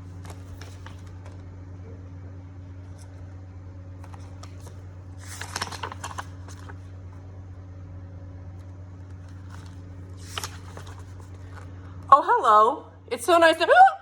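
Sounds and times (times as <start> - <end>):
paper rustling: 0.0 - 1.4, 2.8 - 3.3, 4.0 - 7.2, 9.0 - 11.7
steady low hum: 0.0 - 14.0.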